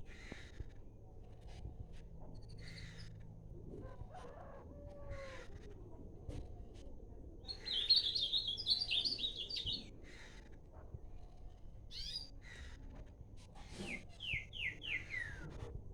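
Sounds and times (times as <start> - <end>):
songbird singing: 7.5 - 9.9, 14.2 - 15.4.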